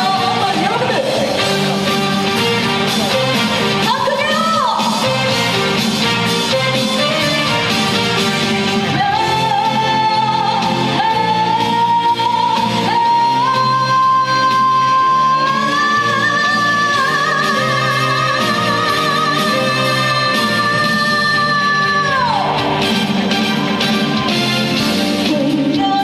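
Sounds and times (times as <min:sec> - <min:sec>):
woman singing with vibrato: 0:00.0 - 0:01.8, 0:03.6 - 0:05.8, 0:06.4 - 0:22.8, 0:25.1 - 0:26.0
amplified band backing track: 0:00.0 - 0:26.0.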